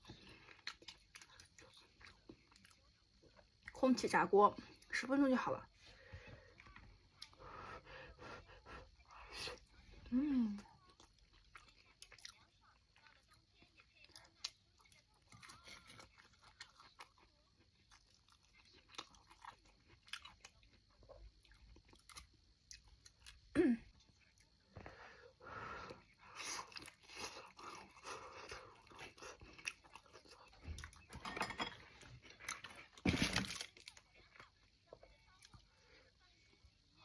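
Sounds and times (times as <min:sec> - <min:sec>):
chewing and biting: 0:00.0 - 0:03.8, 0:10.8 - 0:23.4, 0:26.3 - 0:31.1, 0:32.1 - 0:34.5.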